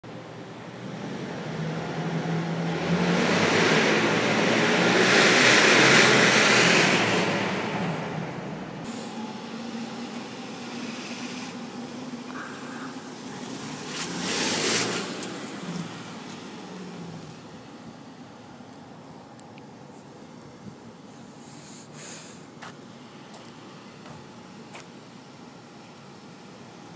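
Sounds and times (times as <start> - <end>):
car passing: 0.8 - 18.6
vehicle passing: 0.9 - 17.7.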